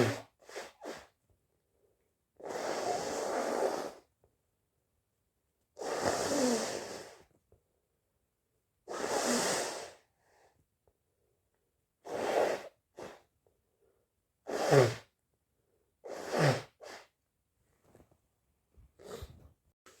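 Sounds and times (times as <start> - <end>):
short sniff: 14.5 - 15.1, 19.0 - 19.5.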